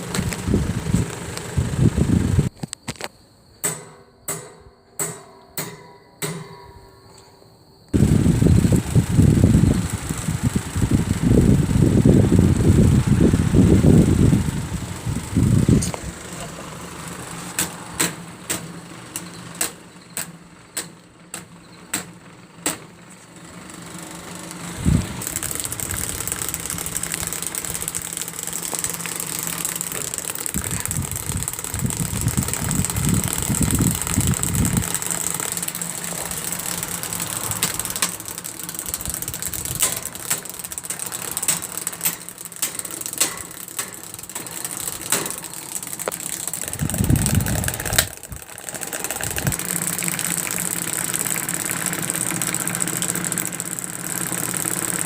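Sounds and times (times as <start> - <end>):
electric fan humming: 0.0 - 2.7, 7.9 - 55.0
low rumbling gust: 8.0 - 16.2
rattling clicks and knocks: 25.2 - 55.0.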